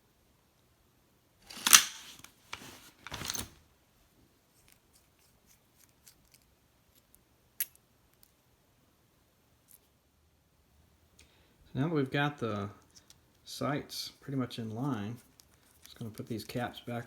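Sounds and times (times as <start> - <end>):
gear scraping rustle: 14.6 - 17.0.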